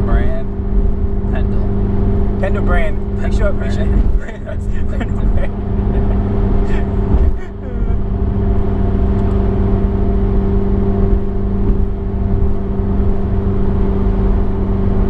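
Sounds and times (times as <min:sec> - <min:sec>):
car road and engine rumble: 0:00.0 - 0:15.0
constant hum: 0:00.0 - 0:15.0.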